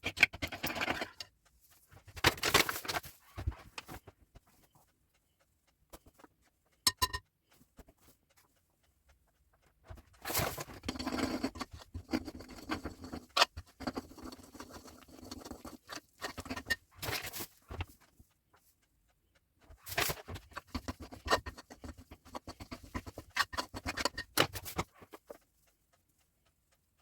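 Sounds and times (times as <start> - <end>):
scraping and rustling: 0.0 - 4.8, 9.9 - 18.2, 19.8 - 25.4
utensil clinking on dish: 6.9 - 7.2.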